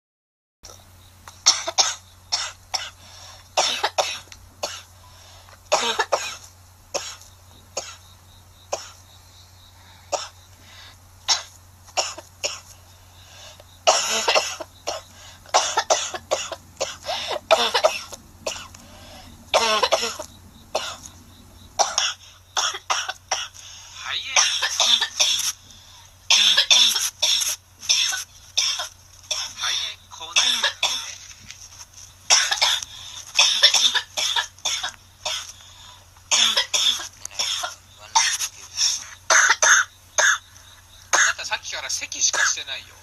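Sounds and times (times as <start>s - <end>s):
girl coughing: 1.4s - 3.0s, 3.6s - 4.9s, 5.7s - 7.2s, 8.7s - 9.0s, 11.3s - 12.7s, 13.9s - 18.7s, 19.5s - 21.1s, 21.8s - 23.6s, 24.4s - 25.5s, 26.3s - 29.7s, 30.3s - 31.2s, 32.3s - 32.8s, 33.4s - 35.5s, 36.3s - 38.5s, 39.3s - 40.4s, 41.1s - 41.5s.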